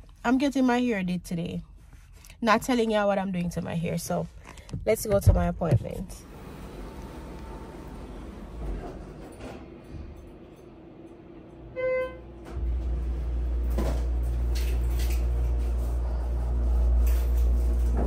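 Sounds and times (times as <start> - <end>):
car engine starting and running: 6.2 - 8.9.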